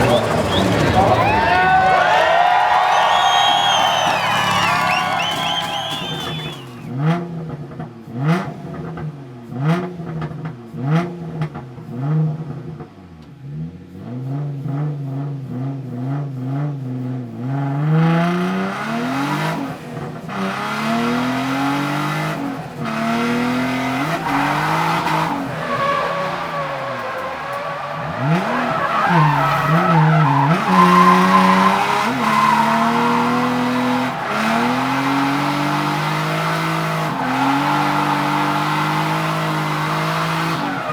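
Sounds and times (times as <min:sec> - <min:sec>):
tyre noise from drifting: 0:00.0 - 0:07.0, 0:18.0 - 0:40.9
car engine revving: 0:00.0 - 0:12.8, 0:17.4 - 0:40.9.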